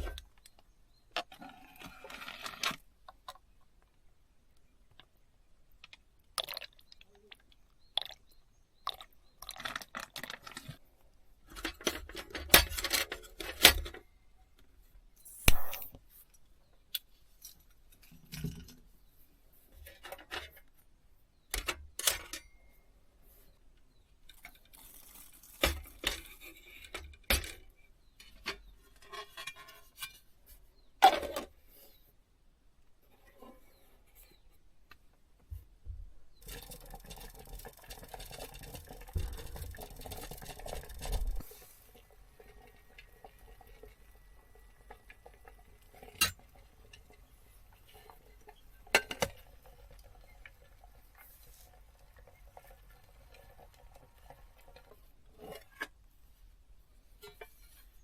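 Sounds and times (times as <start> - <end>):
objects being handled: 15.2 - 16.0.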